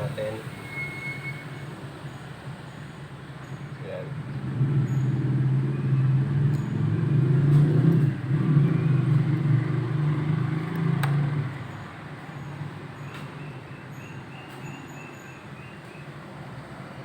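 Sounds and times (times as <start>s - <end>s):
vehicle engine running: 2.8s - 13.7s.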